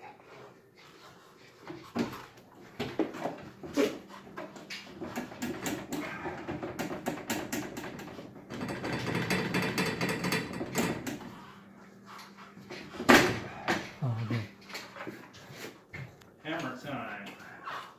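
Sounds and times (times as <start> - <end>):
garage door hardware clicking: 6.8 - 11.3.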